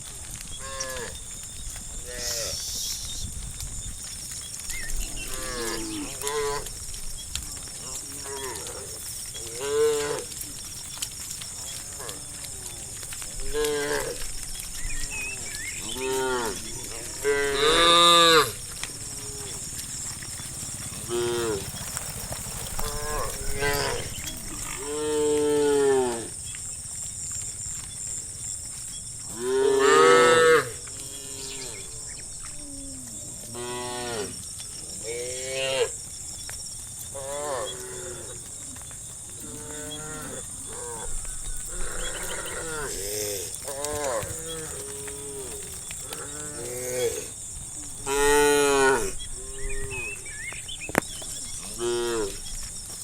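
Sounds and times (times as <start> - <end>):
cattle mooing: 5.2 - 6.7, 15.8 - 26.3, 39.4 - 47.3, 48.0 - 50.2.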